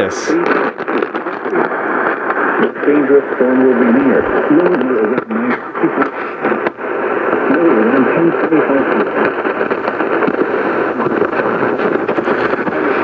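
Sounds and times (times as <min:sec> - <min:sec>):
faint announcer voice: 0:00.0 - 0:00.4
radio static hiss: 0:00.0 - 0:13.0.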